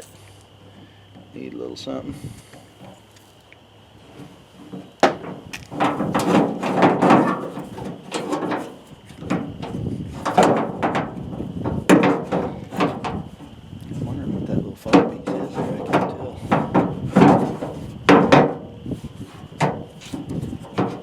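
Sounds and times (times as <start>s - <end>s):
metal parts knocking and rattling: 4.2s - 13.5s, 14.8s - 18.7s.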